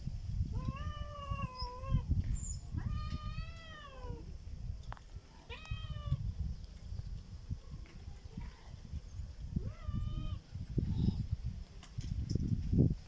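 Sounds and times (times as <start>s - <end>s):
cat meowing: 0.6s - 2.0s, 2.8s - 4.2s, 5.5s - 6.2s, 9.6s - 10.4s.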